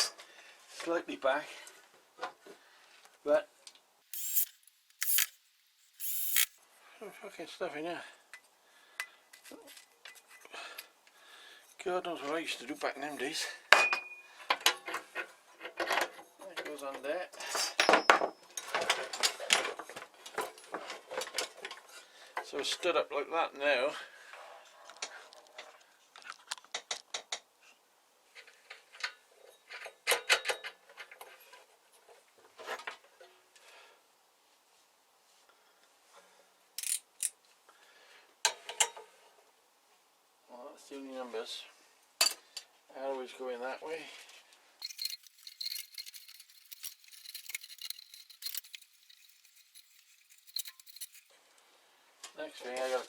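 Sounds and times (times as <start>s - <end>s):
metal parts and tools clinking: 4.2s - 6.6s, 36.8s - 37.3s, 44.8s - 51.3s.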